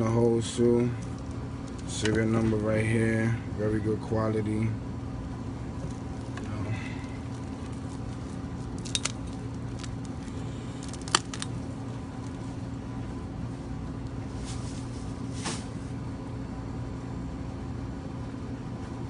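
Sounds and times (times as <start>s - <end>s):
steady low hum: 0.0s - 19.0s
belt clicks and clinks: 8.8s - 10.0s.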